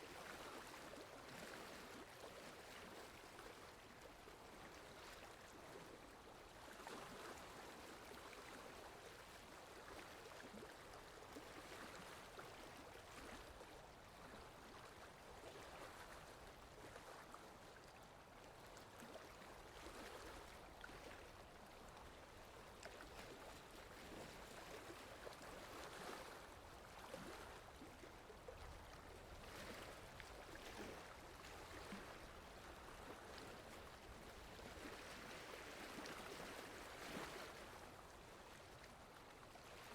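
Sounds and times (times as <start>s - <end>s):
lake water lapping softly: 0.0s - 39.9s.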